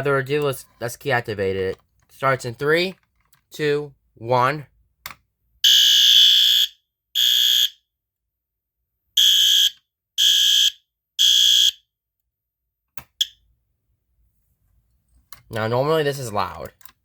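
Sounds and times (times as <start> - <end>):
muffled fire alarm horn blasts: 5.6 - 7.8, 9.2 - 11.8.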